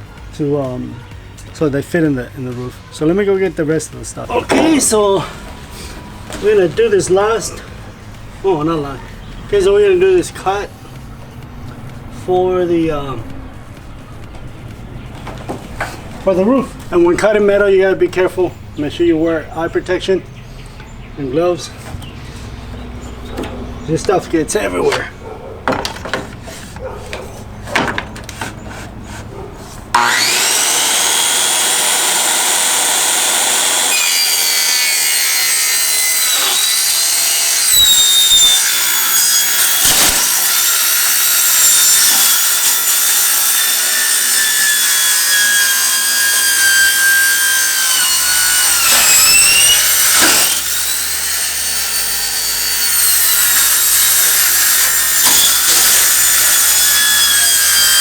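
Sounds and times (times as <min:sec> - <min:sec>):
power saw cutting metal: 0:29.9 - 0:58.0.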